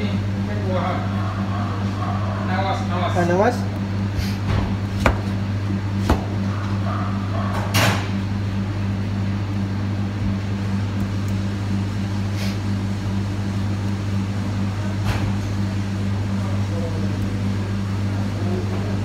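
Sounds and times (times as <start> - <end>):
low machinery hum: 0.0 - 19.0
sharp knocks: 5.0 - 5.3.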